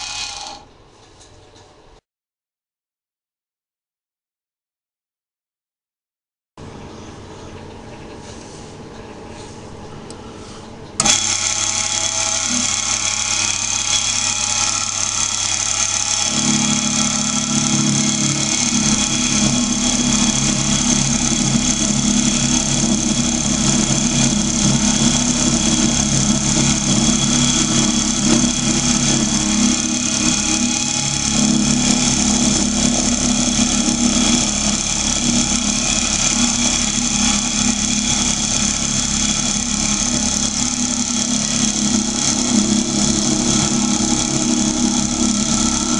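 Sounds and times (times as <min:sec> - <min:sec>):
drill press motor humming: 0:00.0 - 0:00.7, 0:10.9 - 0:45.9
milling cutter working metal: 0:00.0 - 0:00.7, 0:11.0 - 0:45.9.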